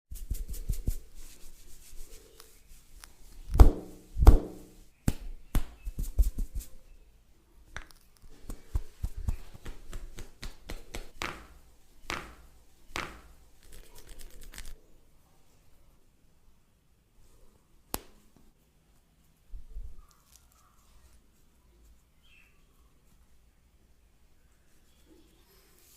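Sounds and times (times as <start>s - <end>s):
hands slapping and rubbing head: 0.1s - 6.8s, 7.7s - 14.8s, 17.9s - 18.5s.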